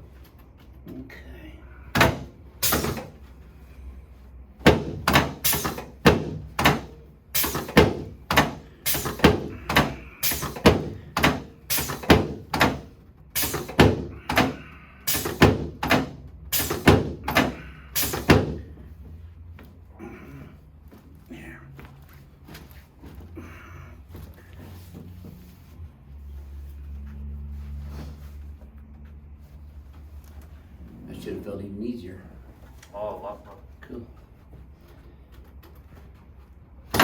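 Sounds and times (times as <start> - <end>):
sharp knocks of chiropractic treatment: 1.9 - 3.2, 4.6 - 18.8.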